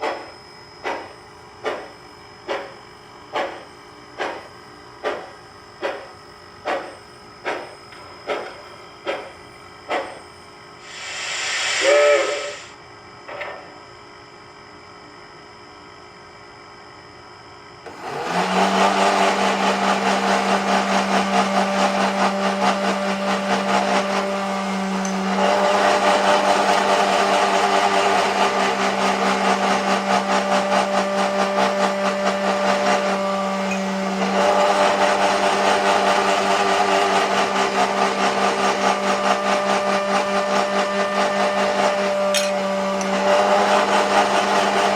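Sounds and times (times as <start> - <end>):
short whistle blast: 11.0 - 12.8.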